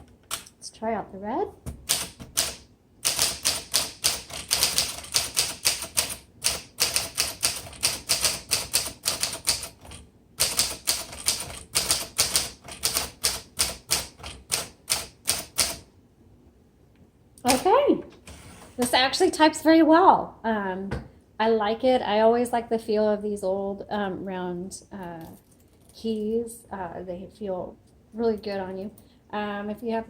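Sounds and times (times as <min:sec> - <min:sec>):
manual typewriter typing: 0:01.8 - 0:15.8.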